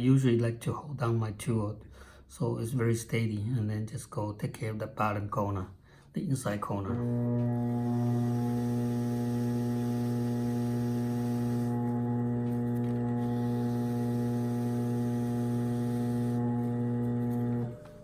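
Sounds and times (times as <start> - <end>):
potter's wheel motor humming: 6.8 - 18.0
trimming tool hiss: 7.8 - 18.0.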